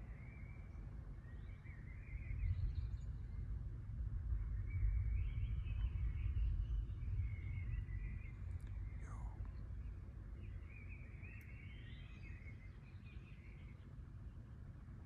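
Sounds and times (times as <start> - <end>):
small birds chirping: 4.5 - 14.6.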